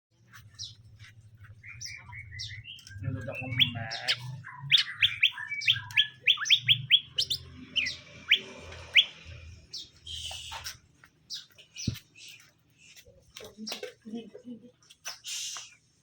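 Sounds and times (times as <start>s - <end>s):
bird calling sharp notes: 1.6s - 10.6s.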